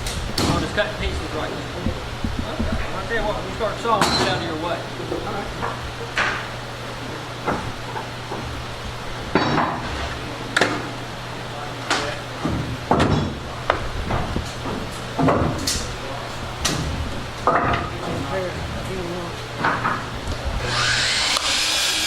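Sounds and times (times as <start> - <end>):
steady low hum: 0.0 - 22.0
wooden boards knocking: 1.7 - 3.4.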